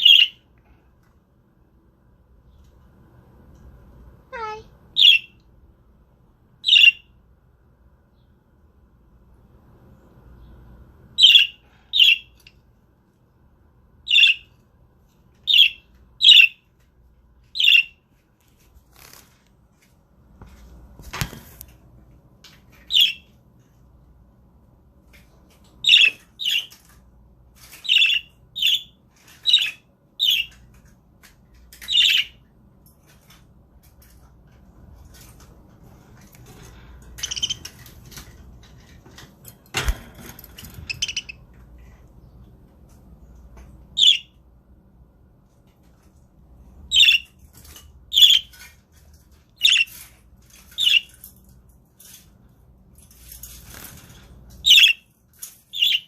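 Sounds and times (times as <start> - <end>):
budgerigars chirping: 6.6 - 7.0, 37.2 - 37.6, 40.9 - 41.4, 44.0 - 44.3, 46.9 - 47.3, 48.1 - 48.5, 49.6 - 49.9, 50.8 - 51.1, 54.6 - 55.0, 55.7 - 56.0.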